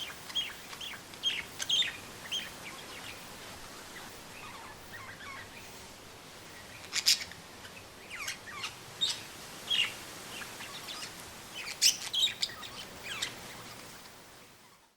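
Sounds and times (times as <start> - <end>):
budgerigars chirping: 0.0 - 3.2, 6.7 - 13.3
wind in trees: 0.0 - 14.9.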